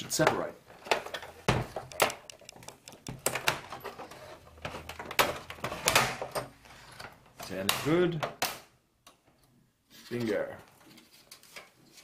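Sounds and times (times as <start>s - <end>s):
plastic parts being pried apart: 0.8s - 3.9s
sharp clicks and knocks: 1.4s - 3.9s.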